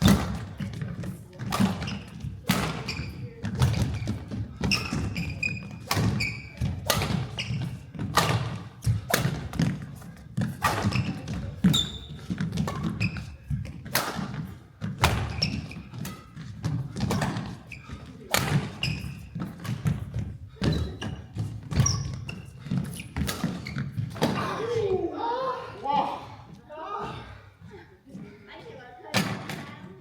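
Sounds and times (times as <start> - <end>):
rackets hitting shuttlecock: 0.0 - 24.5
court shoes squeaking: 0.0 - 24.9.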